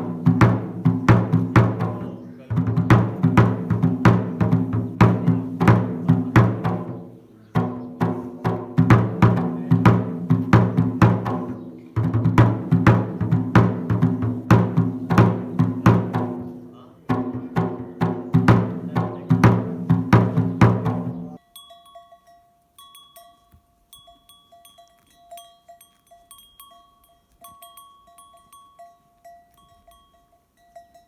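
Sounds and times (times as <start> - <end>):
fast deep drumming: 0.0 - 21.4.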